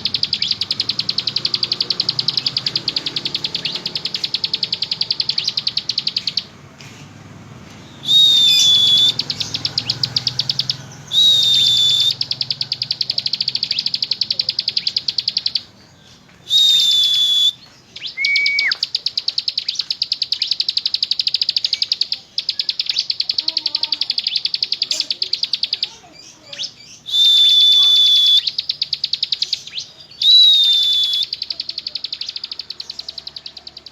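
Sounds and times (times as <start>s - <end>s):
bird rattling trill: 0.0s - 6.5s, 8.1s - 15.7s, 18.2s - 33.9s
bird high whistled note: 8.0s - 9.2s, 11.1s - 12.2s, 27.1s - 28.5s, 30.2s - 31.3s
bird lower dropping whistle: 8.0s - 9.2s, 11.1s - 12.2s, 16.5s - 18.8s, 27.1s - 28.5s, 30.2s - 31.3s.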